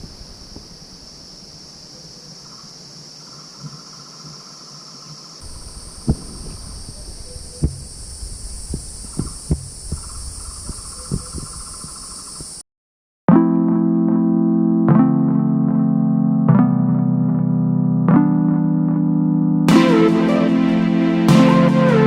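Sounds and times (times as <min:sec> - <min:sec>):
high-pitched insect chorus: 0:00.0 - 0:12.6
low pulsing insect trill: 0:00.0 - 0:12.6.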